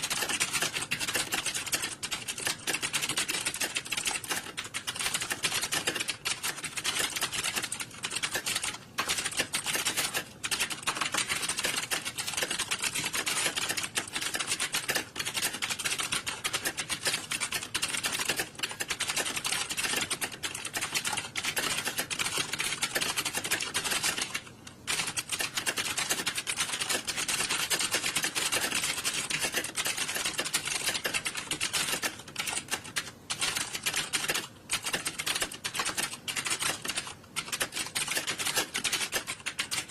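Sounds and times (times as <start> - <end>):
keyboard typing clatter: 0.0 - 39.9.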